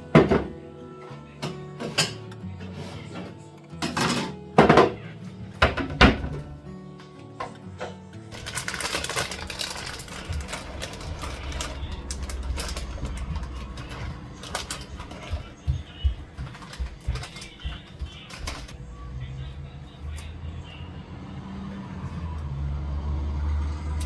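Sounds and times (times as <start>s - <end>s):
soft background music: 0.0s - 24.0s
utensils clicking and scraping: 8.3s - 18.8s.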